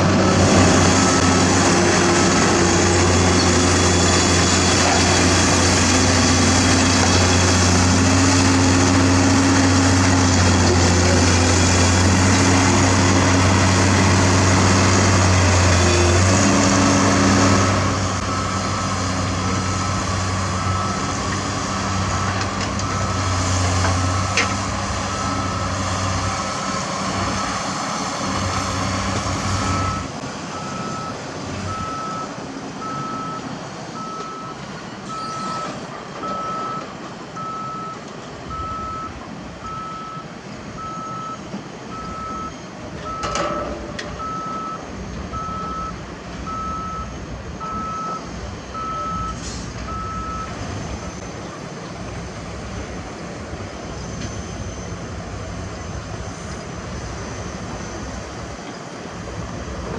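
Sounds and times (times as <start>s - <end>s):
heavy diesel machinery running: 0.0s - 59.9s
reversing alarm beeping: 0.1s - 5.9s, 17.6s - 27.8s, 29.4s - 51.4s.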